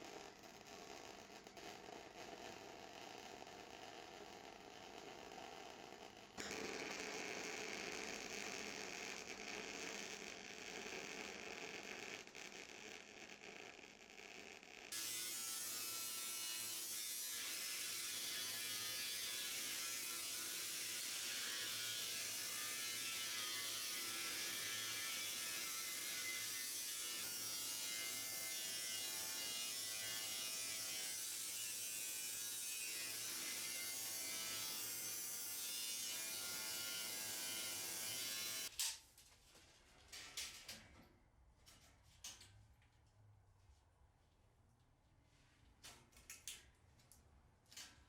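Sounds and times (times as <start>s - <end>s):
welder arc crackling hiss: 6.4s - 14.9s.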